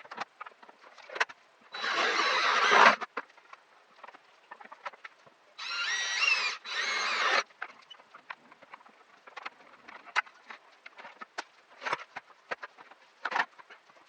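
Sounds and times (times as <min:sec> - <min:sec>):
squeaky rubbing strokes: 0:01.8 - 0:03.0, 0:05.6 - 0:07.4.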